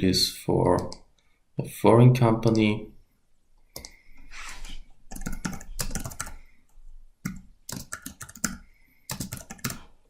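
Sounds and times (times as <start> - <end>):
typing on a computer keyboard: 5.1 - 6.4, 7.2 - 9.8.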